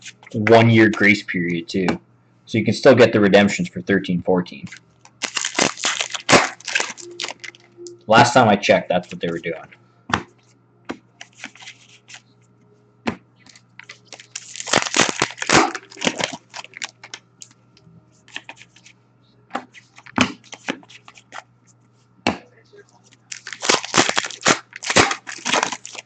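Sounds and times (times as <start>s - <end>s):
card wrappers tearing and crinkling: 4.7s - 7.7s, 11.2s - 12.2s, 13.5s - 17.5s, 19.8s - 21.4s, 23.1s - 26.0s.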